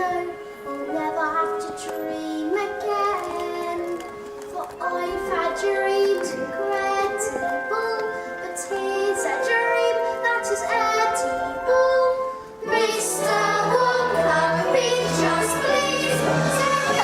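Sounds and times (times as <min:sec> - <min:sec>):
pit orchestra playing: 0:04.9 - 0:17.0
voices singing: 0:09.2 - 0:17.0.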